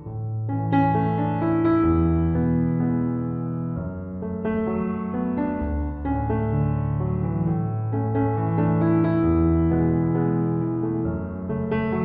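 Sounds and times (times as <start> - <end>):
soft piano melody: 0.0 - 12.0.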